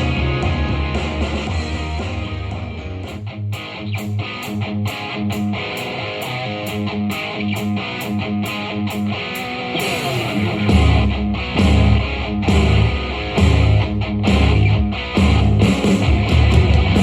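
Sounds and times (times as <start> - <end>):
rock music through small speaker: 0.0 - 17.0
steady drum beat: 9.8 - 17.0.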